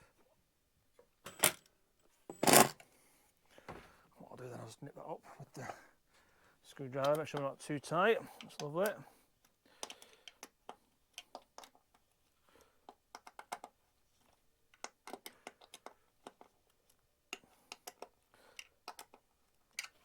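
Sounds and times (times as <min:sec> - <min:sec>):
small clicks of handling wiring: 0:07.0 - 0:07.5, 0:08.4 - 0:12.1, 0:12.8 - 0:20.0.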